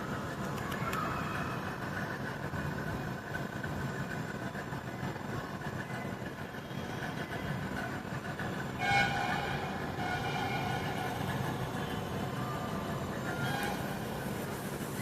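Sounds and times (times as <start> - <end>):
steady machine hum: 0.0 - 15.0.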